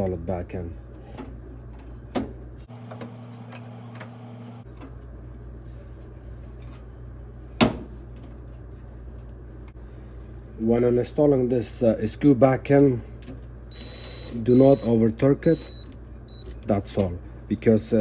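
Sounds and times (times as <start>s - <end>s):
steady low hum: 4.5s - 18.0s.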